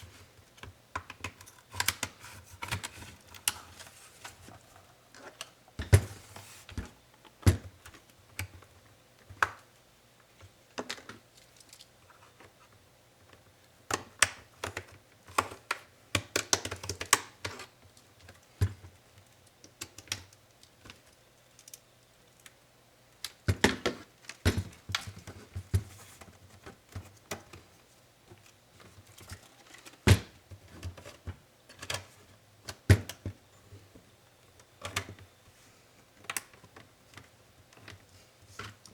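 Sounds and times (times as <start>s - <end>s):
clicks and taps on laptop parts: 13.3s - 17.7s.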